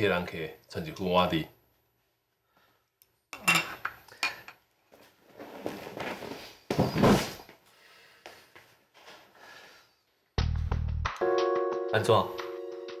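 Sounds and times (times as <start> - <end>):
tableware knocking: 3.4 - 4.5
dishes and cutlery clattering: 3.4 - 4.6.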